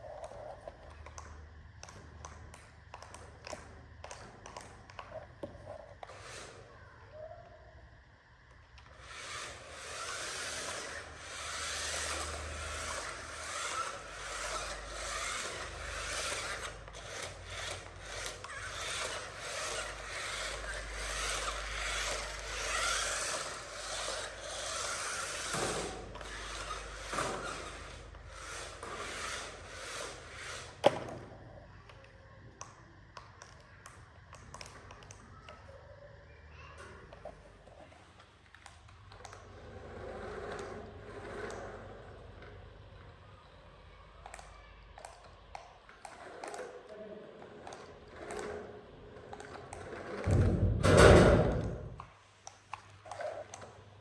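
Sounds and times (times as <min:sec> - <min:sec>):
scraping and rubbing: 0:09.1 - 0:30.8.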